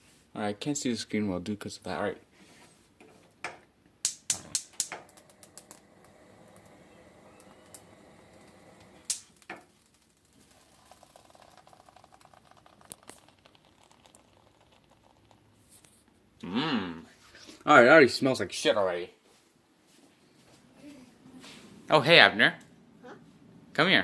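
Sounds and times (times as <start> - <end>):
lighter clicks: 4.0 - 5.8, 9.0 - 9.4
faint burning crackle: 4.0 - 16.4.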